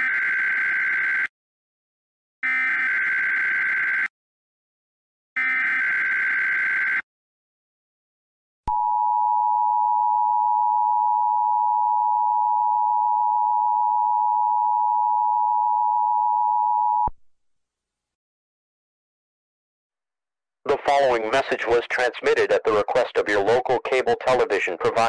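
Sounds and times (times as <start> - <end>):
two-tone alert alarm: 2.4 - 4.1, 5.4 - 7.0.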